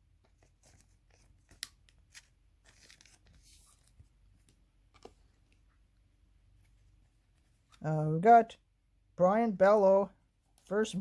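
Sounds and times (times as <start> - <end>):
trading cards rustling and clicking: 0.2 - 5.6.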